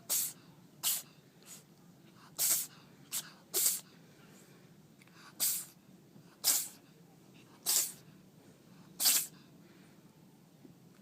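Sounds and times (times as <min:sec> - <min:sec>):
cat sneezing: 0:00.0 - 0:03.9, 0:05.3 - 0:06.8, 0:07.6 - 0:08.0, 0:09.0 - 0:09.4.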